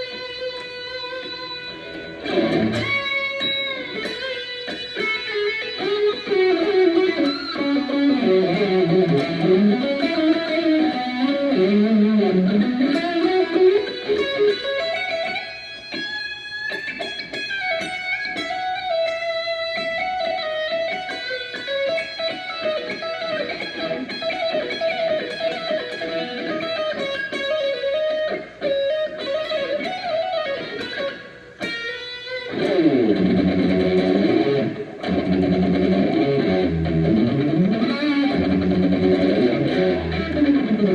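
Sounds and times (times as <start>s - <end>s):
solo guitar melody: 0.0s - 40.9s.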